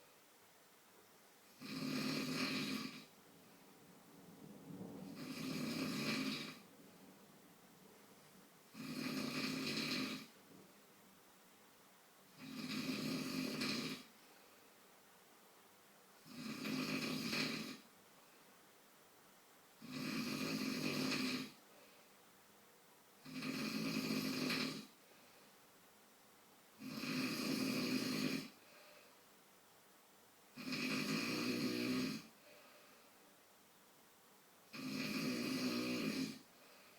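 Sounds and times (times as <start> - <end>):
man snoring: 1.5 - 3.1, 5.1 - 6.7, 8.7 - 10.4, 12.4 - 14.1, 16.2 - 17.9, 19.8 - 21.6, 23.2 - 25.0, 26.8 - 28.6, 30.6 - 32.4, 34.7 - 36.8.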